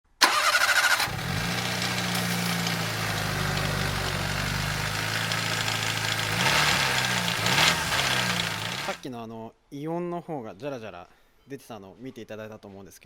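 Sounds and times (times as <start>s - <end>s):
engine idling with rattling: 0.2s - 9.0s.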